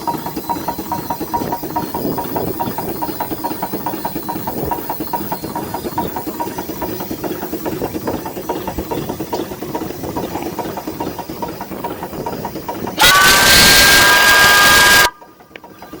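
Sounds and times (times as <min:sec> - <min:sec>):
steam engine beat: 0:00.0 - 0:16.0
steam whistle blowing: 0:13.0 - 0:15.2.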